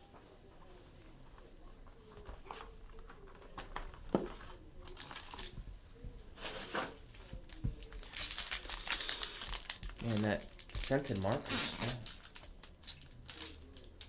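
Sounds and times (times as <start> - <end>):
packaging crinkling and tearing: 2.4 - 5.6, 6.4 - 14.0.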